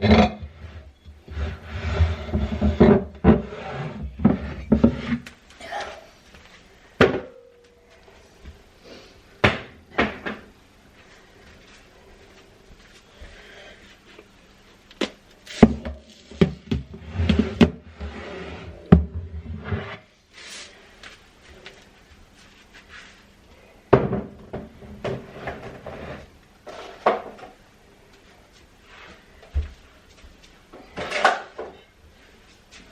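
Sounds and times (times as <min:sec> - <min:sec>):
kitchen items clunking and clattering: 0:30.8 - 0:31.9.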